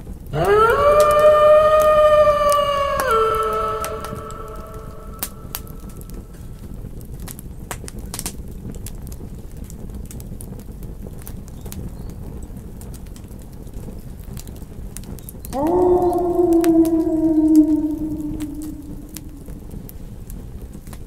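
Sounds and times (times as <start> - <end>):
wolf howl: 0.4 - 6.3, 15.5 - 19.8
campfire crackling: 1.0 - 11.7, 12.4 - 21.0.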